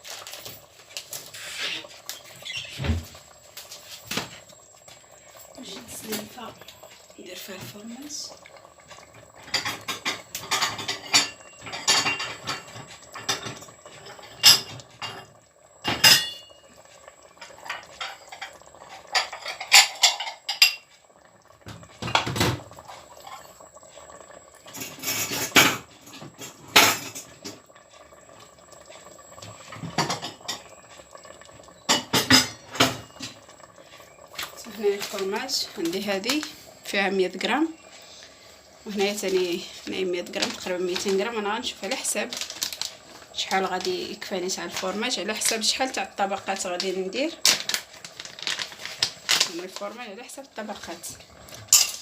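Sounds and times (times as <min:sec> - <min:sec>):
dishes and utensils clattering: 0:09.4 - 0:15.3, 0:17.7 - 0:20.9, 0:51.6 - 0:52.0.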